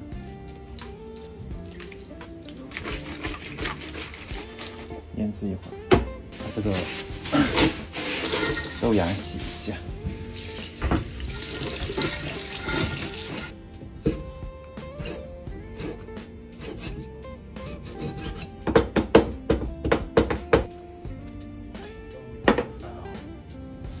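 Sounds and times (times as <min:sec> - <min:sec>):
background music: 0:00.0 - 0:24.0
tap running into sink: 0:00.2 - 0:04.9, 0:05.9 - 0:14.4.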